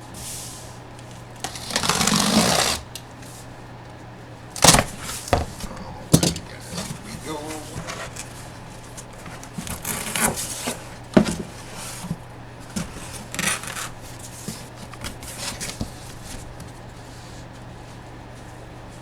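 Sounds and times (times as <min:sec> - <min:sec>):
hands rubbing and scraping packaging: 0:00.2 - 0:03.5, 0:04.6 - 0:16.5.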